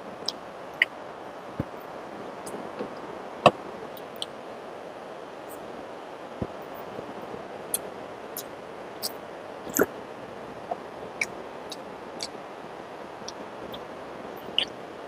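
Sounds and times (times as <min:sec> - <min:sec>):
steady hiss: 0:00.0 - 0:15.0
person chewing with mouth clicks: 0:09.7 - 0:09.9.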